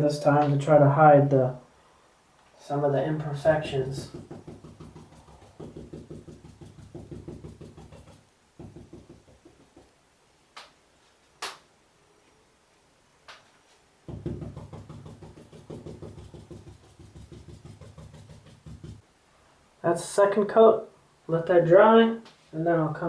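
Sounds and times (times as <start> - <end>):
paintbrush dabbing on wall: 3.3 - 10.0, 14.1 - 19.0.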